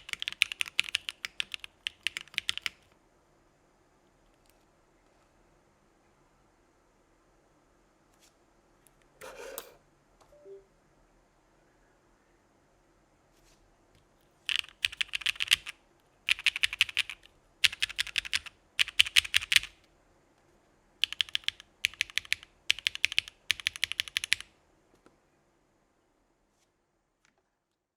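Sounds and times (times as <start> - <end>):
mechanical keyboard typing: 0.0 - 2.9, 14.5 - 19.8, 21.0 - 24.5.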